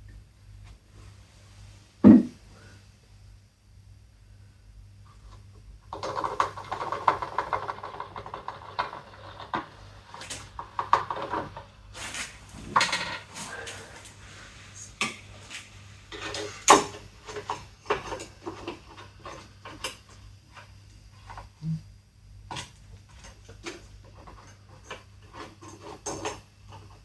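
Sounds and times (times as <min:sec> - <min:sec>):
loud knock: 0:02.0 - 0:02.4.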